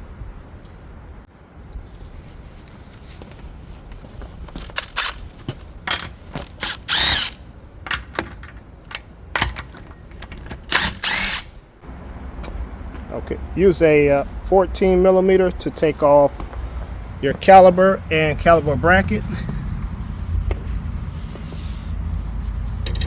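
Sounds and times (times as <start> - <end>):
impact wrench bursts: 6.4 - 7.4, 10.7 - 11.7.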